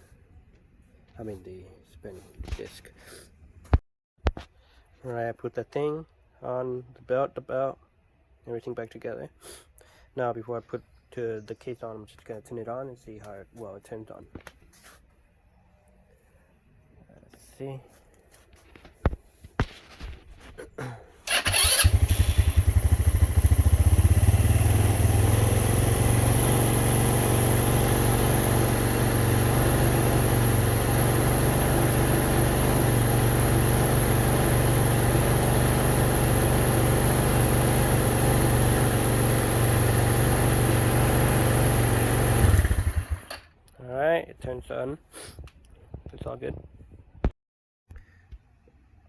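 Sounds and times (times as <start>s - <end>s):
atv engine starting and idling: 21.2s - 43.5s.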